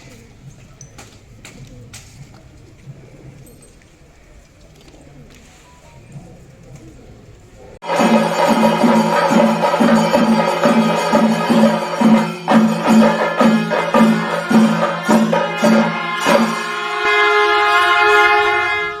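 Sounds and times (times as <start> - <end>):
drums beating: 7.8 - 17.6.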